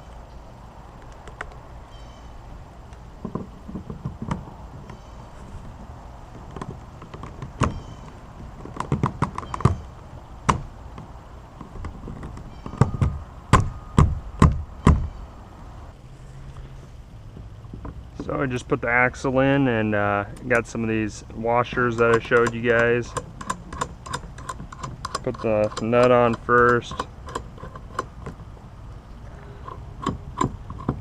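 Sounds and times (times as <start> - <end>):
plastic pipes knocking: 3.2 - 4.9, 6.4 - 9.8, 30.0 - 31.0.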